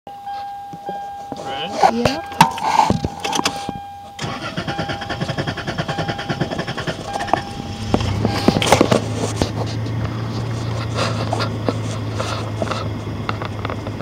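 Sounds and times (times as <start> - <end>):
engine running steadily: 0.4 - 14.0
engine starter cranking: 3.1 - 9.1.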